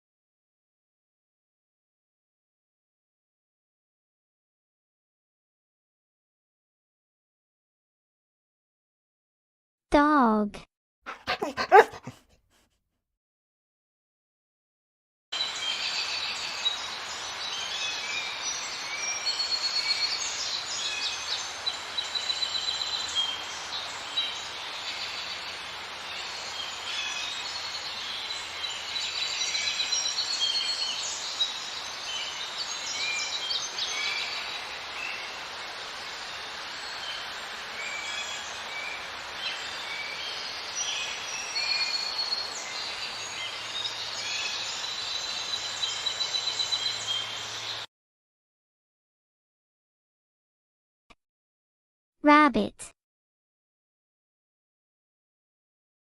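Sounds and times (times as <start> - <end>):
small birds chirping and trilling: 15.4 - 47.8
steady background hiss: 15.5 - 47.8.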